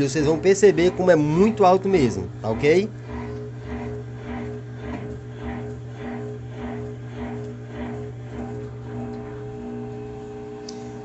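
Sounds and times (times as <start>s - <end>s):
washing machine drain pump humming: 0.0s - 11.0s.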